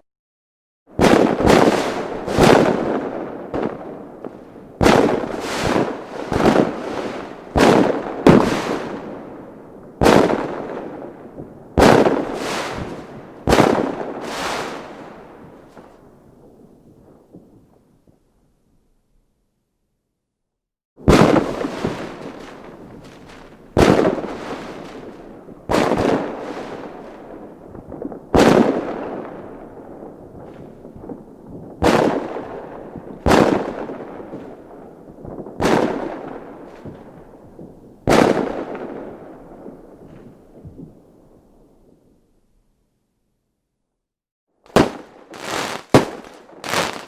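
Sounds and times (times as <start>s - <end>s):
fireworks bangs: 1.0s - 17.9s, 21.0s - 41.0s, 44.7s - 47.0s
small pops: 44.7s - 47.0s.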